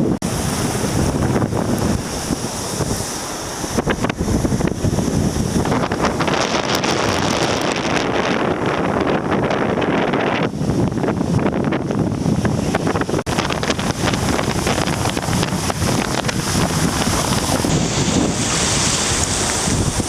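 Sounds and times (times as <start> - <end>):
rushing sea water: 0.0 - 20.0
strong wind buffeting microphone: 0.0 - 20.0.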